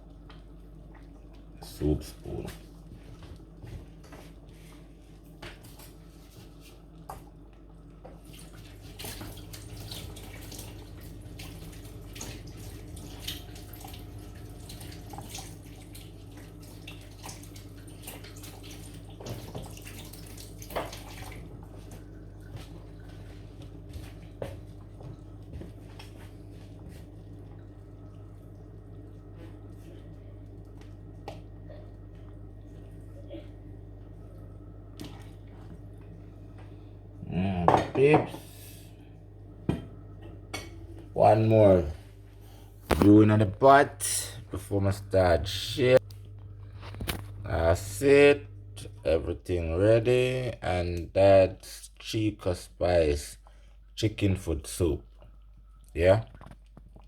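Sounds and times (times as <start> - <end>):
steady low hum: 0.0 - 57.0
liquid splashing and dripping: 7.0 - 33.3.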